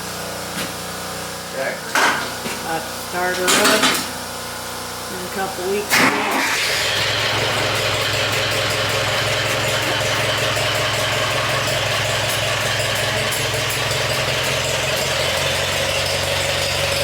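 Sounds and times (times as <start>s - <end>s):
tractor engine idling: 6.0s - 17.0s.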